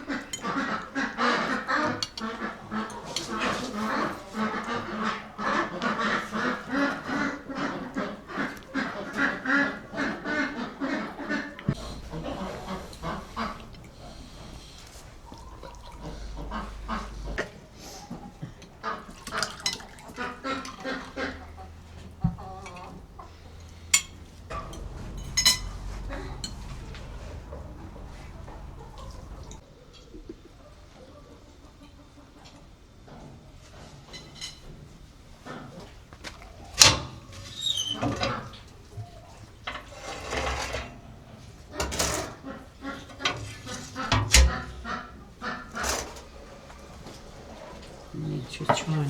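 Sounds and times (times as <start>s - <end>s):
tableware clinking: 22.2s - 29.6s.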